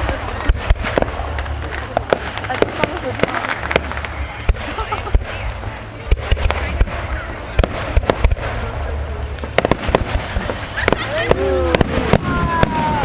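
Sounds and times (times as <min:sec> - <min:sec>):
constant noisy rumble: 0:00.0 - 0:13.0
fireworks bangs and crackles: 0:00.0 - 0:13.0.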